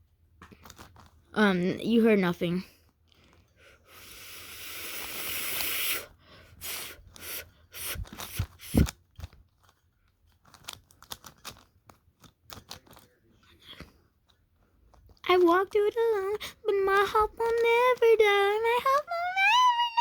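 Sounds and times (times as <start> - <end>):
hiss of noise: 4.0 - 8.9
puzzle cube plastic clicks: 6.9 - 19.1.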